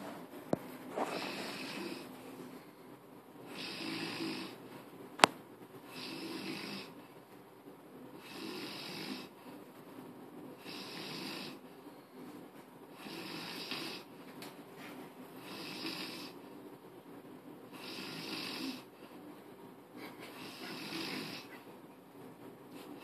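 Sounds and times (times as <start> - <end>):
person snoring: 1.0 - 2.1, 3.5 - 4.6, 5.9 - 7.0, 8.2 - 9.4, 10.6 - 11.6, 12.9 - 14.1, 15.4 - 16.4, 17.7 - 18.9, 20.4 - 21.5.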